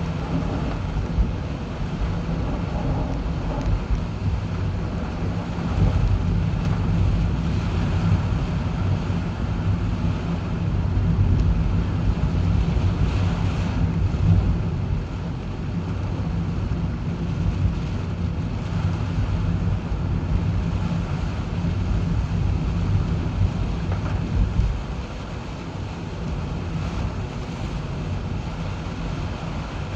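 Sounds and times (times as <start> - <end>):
car driving rumble: 0.0 - 29.9
strong wind noise: 0.0 - 29.9.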